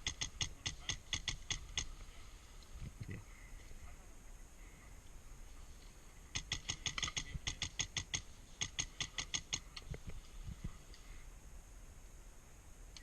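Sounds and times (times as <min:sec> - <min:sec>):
airsoft rifle firing: 0:00.0 - 0:02.0, 0:06.3 - 0:09.7.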